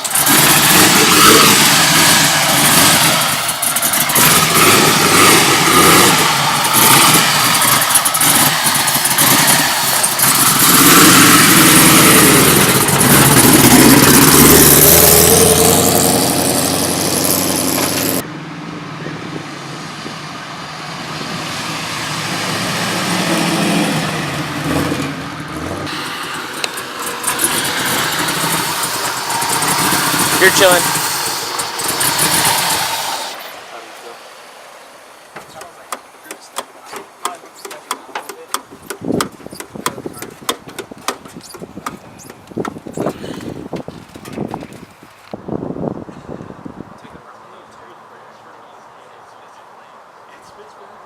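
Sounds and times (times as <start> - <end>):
car engine accelerating: 0.0 - 34.1.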